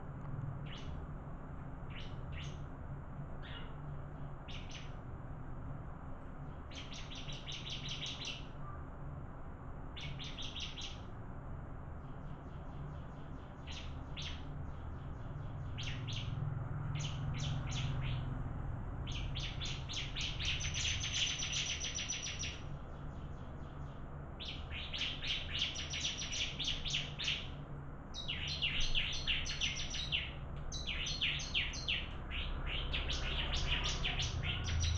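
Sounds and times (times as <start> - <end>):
steady low hum: 0.0 - 34.9
bird chirping rapidly: 0.6 - 1.0, 1.9 - 2.6, 4.5 - 5.0, 6.7 - 8.5, 10.0 - 11.0, 12.6 - 16.4, 17.0 - 18.3, 19.1 - 34.9.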